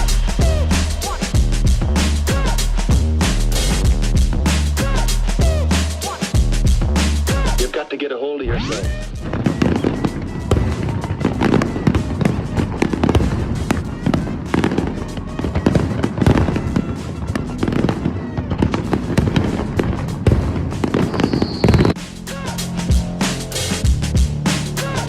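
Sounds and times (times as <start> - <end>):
fireworks bursting: 0.0 - 3.9, 7.0 - 22.2
music playing: 0.0 - 25.0.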